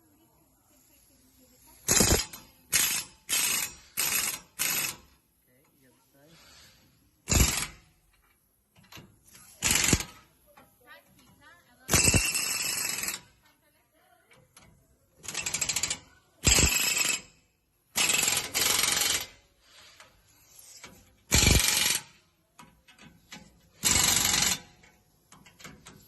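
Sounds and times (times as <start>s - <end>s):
impact wrench hammering: 1.9s - 5.2s, 7.2s - 8.2s, 9.6s - 10.2s, 11.9s - 13.2s, 15.2s - 19.4s, 20.8s - 26.0s.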